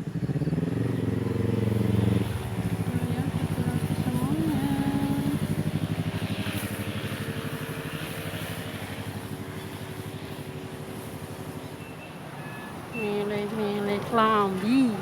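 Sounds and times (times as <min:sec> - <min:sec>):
motorcycle engine running: 0:00.0 - 0:11.8.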